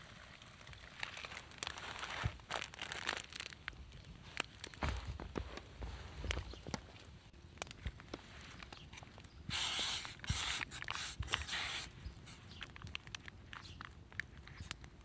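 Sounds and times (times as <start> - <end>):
rustling: 0.0 - 9.3.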